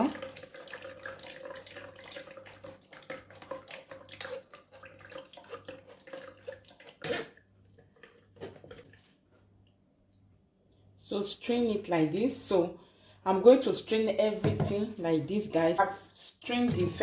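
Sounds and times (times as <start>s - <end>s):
juice trickling through strainer: 0.0s - 9.2s.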